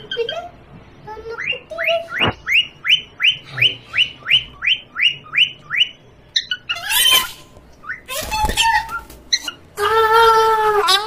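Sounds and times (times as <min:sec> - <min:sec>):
parrot chirping: 0:01.2 - 0:09.7.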